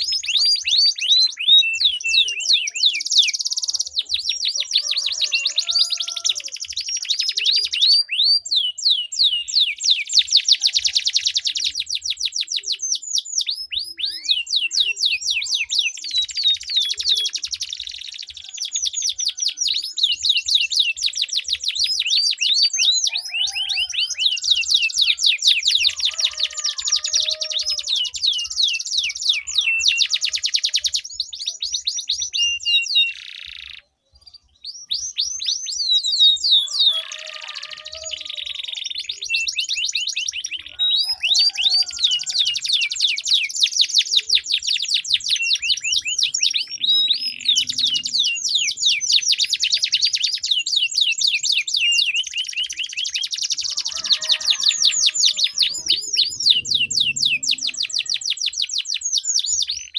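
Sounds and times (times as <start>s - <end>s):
canary singing rolling trills: 0.0s - 59.9s.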